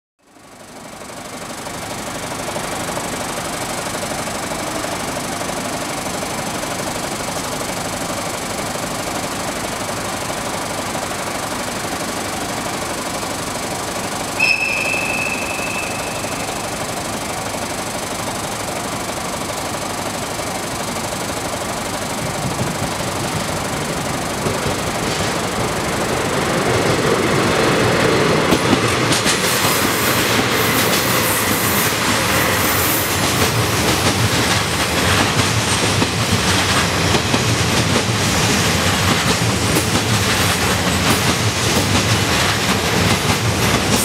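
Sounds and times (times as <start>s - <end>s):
diesel locomotive engines rumbling: 0.3s - 44.0s
high tone: 14.4s - 17.0s.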